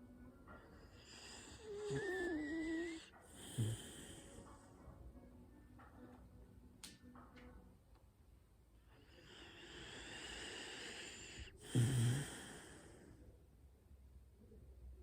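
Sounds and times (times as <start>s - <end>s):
dog snoring: 0.6s - 4.5s, 9.0s - 13.1s.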